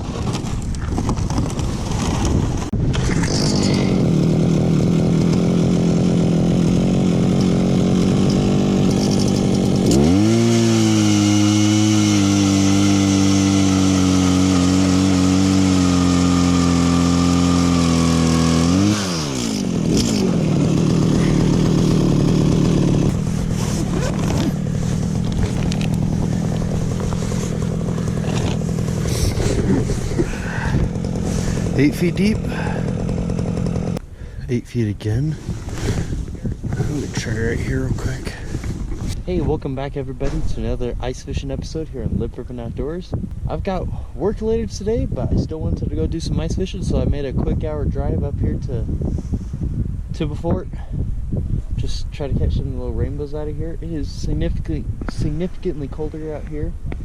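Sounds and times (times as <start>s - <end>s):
ice auger engine revving: 2.9s - 34.0s.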